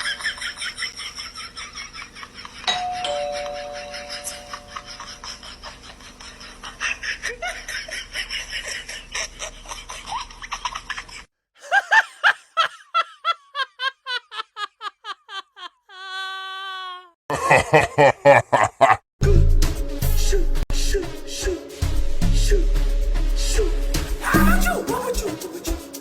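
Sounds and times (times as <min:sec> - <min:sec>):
group of people laughing: 0:00.0 - 0:16.5, 0:17.3 - 0:19.0
single person laughing: 0:00.0 - 0:19.0.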